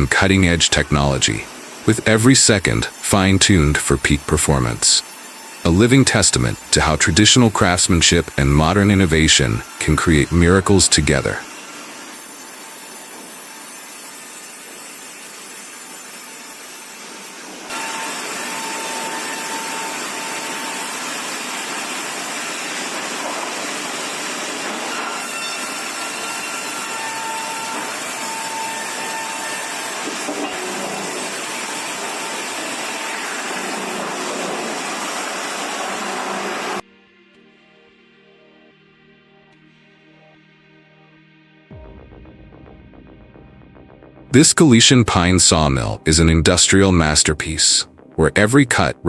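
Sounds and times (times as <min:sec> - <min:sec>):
high saw whines: 0:00.0 - 0:36.8
sawmill machinery rushing: 0:00.0 - 0:36.8.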